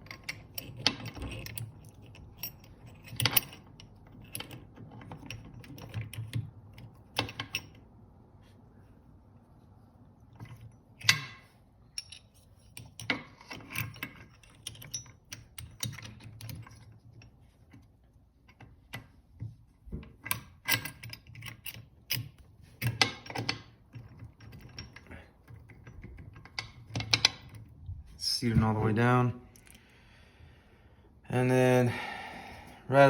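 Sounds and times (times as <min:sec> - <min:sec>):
metal parts clicking and clinking: 0:00.0 - 0:07.8, 0:10.3 - 0:19.1, 0:20.0 - 0:27.8.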